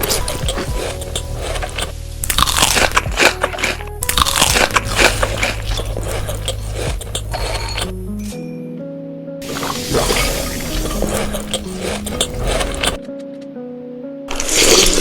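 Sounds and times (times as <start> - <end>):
crunchy food being chewed: 0.0 - 7.9, 9.5 - 13.0, 14.3 - 15.0
background music: 0.0 - 15.0.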